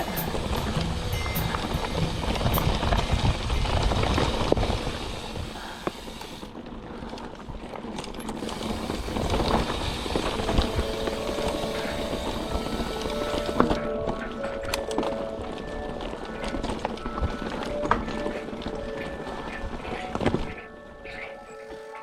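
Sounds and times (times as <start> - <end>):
background music with held notes: 0.0 - 3.3, 10.4 - 22.0
wind on microphone: 0.0 - 5.6
bike tyre and frame rattle: 0.0 - 21.4.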